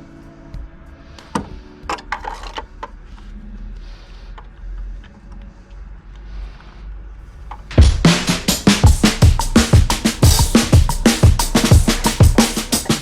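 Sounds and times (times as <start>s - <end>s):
drum and bass music: 7.6s - 13.0s.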